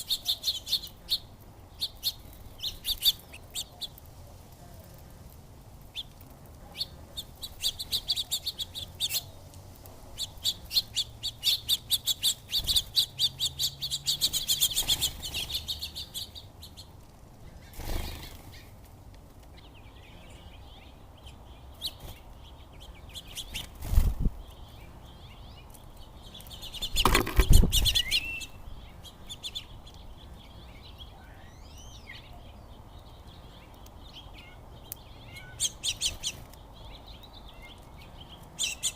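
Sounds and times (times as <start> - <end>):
small birds chirping: 0.0 - 38.9
wings fluttering: 14.0 - 16.2, 17.0 - 19.5, 23.2 - 24.4, 26.4 - 28.2.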